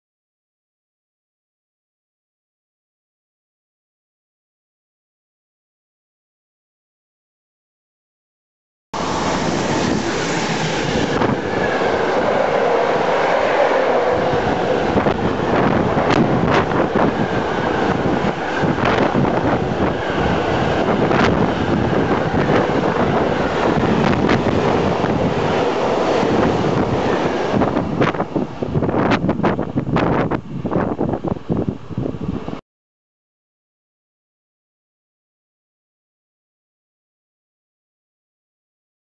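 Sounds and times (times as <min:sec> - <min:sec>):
train rolling on rails: 0:09.0 - 0:32.6.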